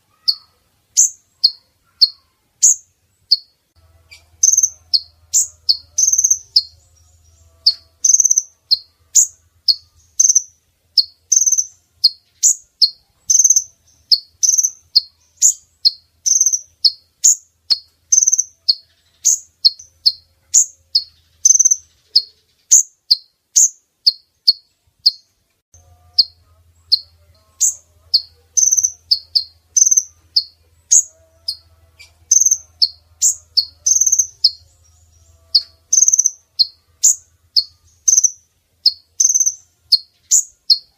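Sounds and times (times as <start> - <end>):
sunbird high chirps: 0.0 - 40.9.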